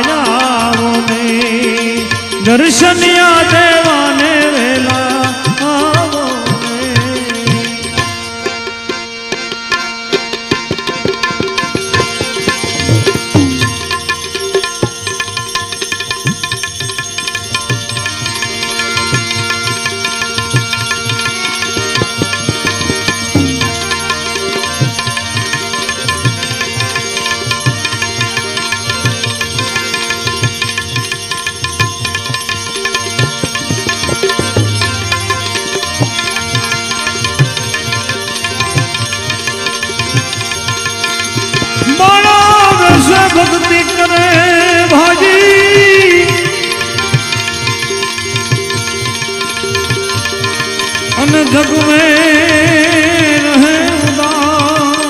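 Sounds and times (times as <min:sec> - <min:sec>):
sustained melody instruments: 0:00.0 - 0:55.0
tabla playing rhythm: 0:00.0 - 0:55.0
hand drum strokes: 0:10.5 - 0:15.6, 0:20.8 - 0:24.3, 0:32.9 - 0:36.8.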